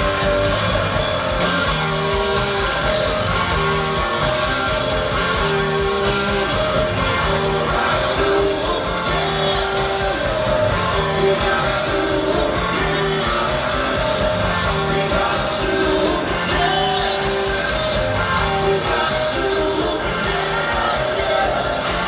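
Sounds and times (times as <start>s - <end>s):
rock band playing live: 0.0s - 22.0s
person singing: 5.5s - 22.0s.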